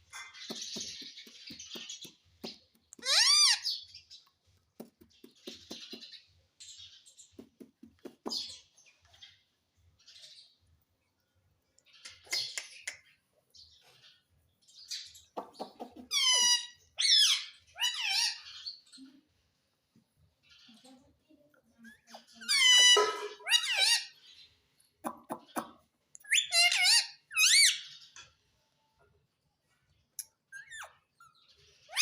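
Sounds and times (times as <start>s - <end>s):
parakeet screeches: 3.0s - 3.8s, 16.1s - 18.6s, 22.3s - 24.2s, 26.3s - 27.9s
parakeet squawking and chattering: 3.0s - 4.0s, 15.6s - 18.9s, 21.7s - 24.4s, 25.0s - 28.1s, 30.2s - 32.0s.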